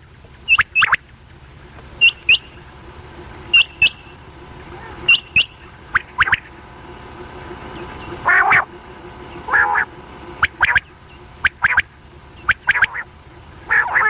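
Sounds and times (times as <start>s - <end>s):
quail calling: 0.4s - 1.1s, 2.0s - 2.8s, 3.4s - 6.6s, 7.6s - 14.0s.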